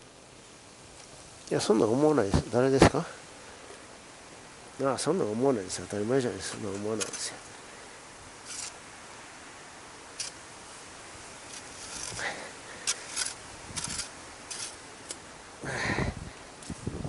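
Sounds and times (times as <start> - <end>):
steady hiss: 0.0 - 17.0
short rustles and scrapes: 5.7 - 7.6, 8.4 - 8.8, 11.4 - 15.2.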